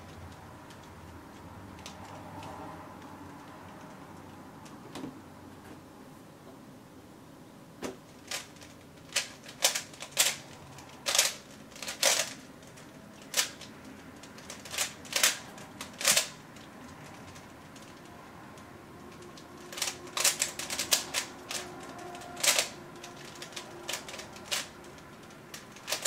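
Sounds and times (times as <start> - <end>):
puzzle cube clicking: 8.3 - 18.0, 19.1 - 21.6, 22.4 - 26.0.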